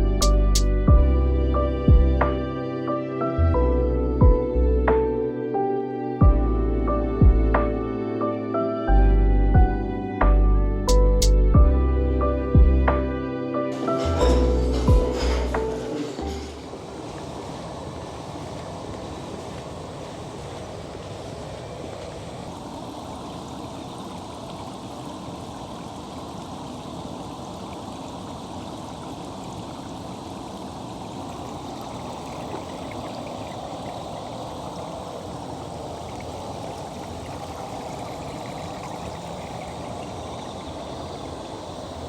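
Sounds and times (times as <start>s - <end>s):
water running and splashing: 13.7s - 42.0s.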